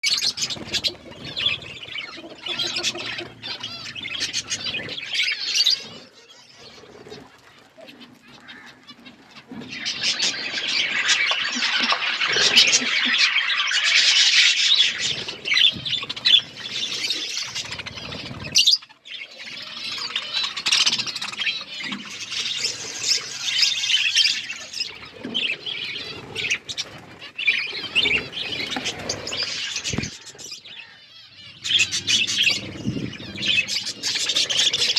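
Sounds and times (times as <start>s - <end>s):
budgerigar squawks: 0.0s - 9.1s
budgerigars chattering and chirping: 0.0s - 34.9s.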